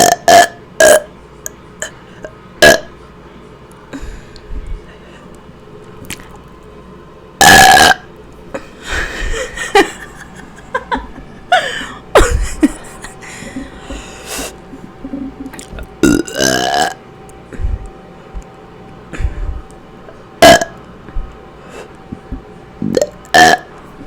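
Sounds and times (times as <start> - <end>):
woman burping: 0.0 - 1.1, 2.6 - 2.9, 7.4 - 8.1, 11.5 - 13.1, 15.6 - 17.0, 20.4 - 20.8, 22.9 - 23.7.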